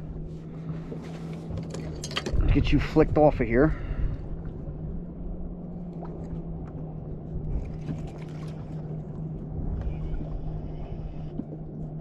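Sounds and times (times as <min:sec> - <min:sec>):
boat motor humming: 0:00.0 - 0:12.0
water sloshing against hull: 0:00.0 - 0:12.0.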